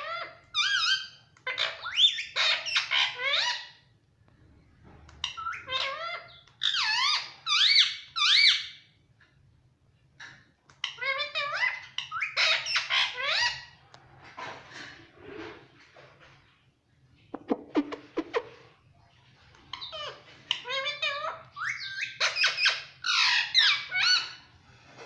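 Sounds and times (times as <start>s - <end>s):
parrot chattering squeaky calls: 0.0s - 3.8s, 5.2s - 8.9s, 10.8s - 13.8s, 19.7s - 24.5s.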